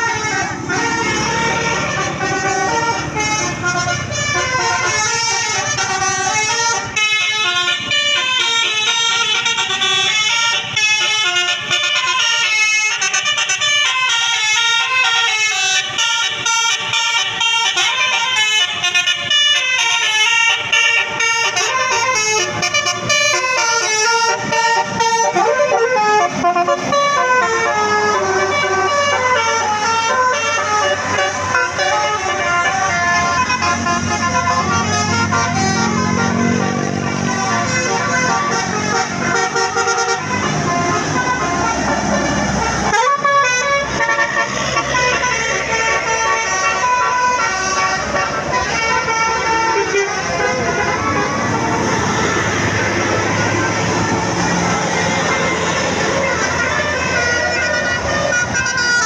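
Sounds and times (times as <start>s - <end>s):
musical air horn melody: 0.0s - 52.1s.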